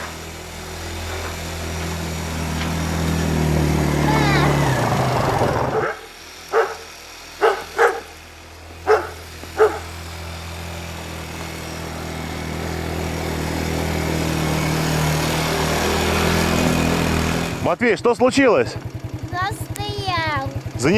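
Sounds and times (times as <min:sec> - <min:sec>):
atv engine running: 0:00.0 - 0:20.9
dog barking: 0:05.7 - 0:08.2, 0:08.8 - 0:09.9.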